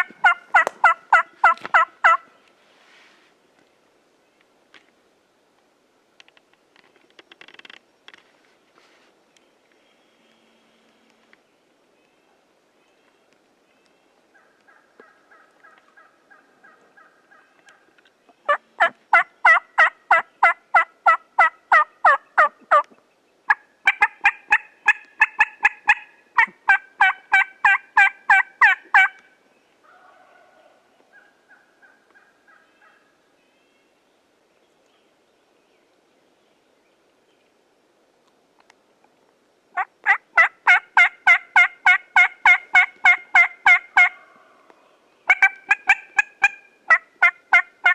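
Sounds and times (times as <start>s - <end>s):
turkey yelping: 0.0s - 2.3s, 18.5s - 22.9s, 23.5s - 29.3s, 29.9s - 33.1s, 39.8s - 44.6s, 45.3s - 47.9s.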